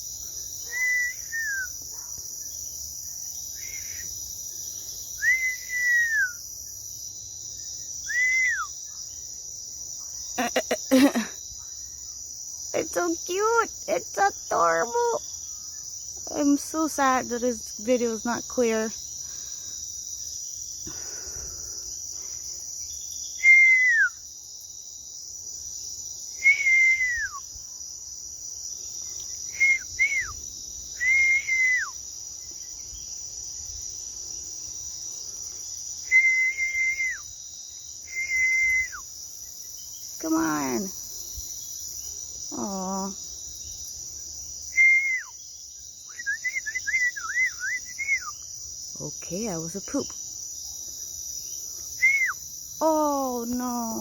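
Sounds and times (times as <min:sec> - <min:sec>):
night insects chorus: 0:00.0 - 0:54.0
quavering whistled trill: 0:00.6 - 0:01.7, 0:05.2 - 0:06.4, 0:08.0 - 0:08.7, 0:23.4 - 0:24.2, 0:26.4 - 0:27.4, 0:29.5 - 0:30.4, 0:31.0 - 0:32.0, 0:36.0 - 0:37.3, 0:38.0 - 0:39.1, 0:44.7 - 0:45.4, 0:46.1 - 0:48.4, 0:52.0 - 0:52.4.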